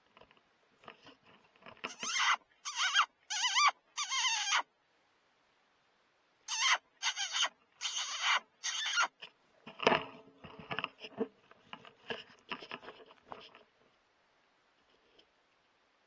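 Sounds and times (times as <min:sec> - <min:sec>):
high wavering squeals: 0:01.9 - 0:04.6.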